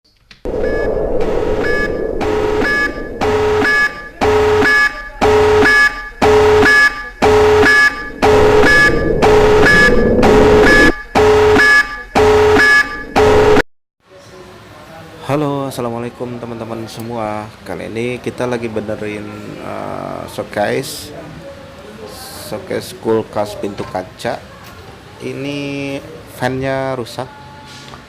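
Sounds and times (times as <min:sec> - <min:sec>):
loud electronic beeping: 0:00.5 - 0:13.6.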